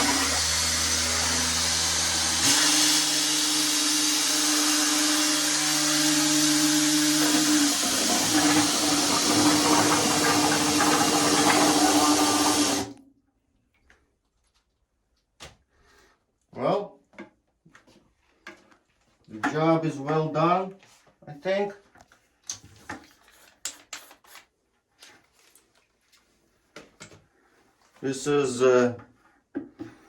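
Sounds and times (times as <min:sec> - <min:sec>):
power drill motor whine: 0:00.0 - 0:12.9.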